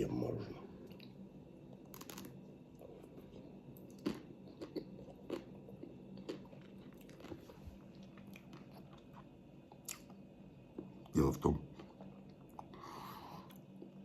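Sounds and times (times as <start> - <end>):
crunching bites and chewing: 1.8 - 2.4, 3.0 - 10.2.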